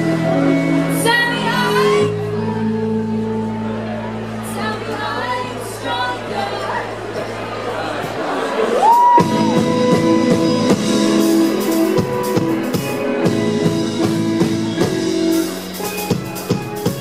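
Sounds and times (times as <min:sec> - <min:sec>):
drum kit: 0:08.8 - 0:17.0
electric guitar: 0:08.8 - 0:17.0.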